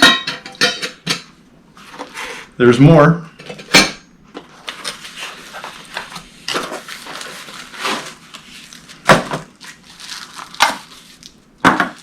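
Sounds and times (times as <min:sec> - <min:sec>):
metal cookware clinking: 0:00.0 - 0:01.3
packaging rustling: 0:04.5 - 0:12.0.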